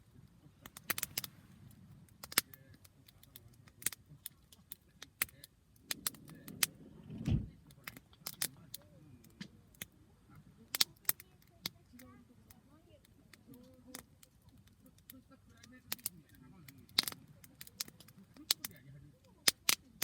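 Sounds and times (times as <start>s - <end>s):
campfire crackling: 0.0s - 20.0s
fire pops and snaps: 0.0s - 20.0s
low rumble: 6.0s - 7.8s.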